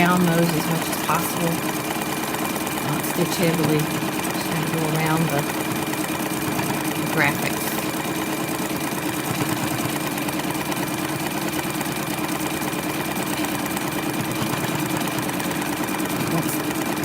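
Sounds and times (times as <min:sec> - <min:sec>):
sewing machine running: 0:00.0 - 0:17.0.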